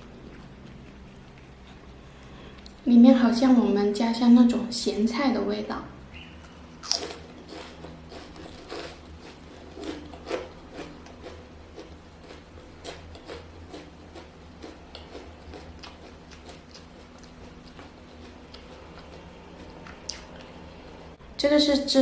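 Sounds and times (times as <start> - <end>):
chewing crispy flatbread: 0.0 - 2.4, 6.2 - 21.2
faint low hum: 0.0 - 22.0.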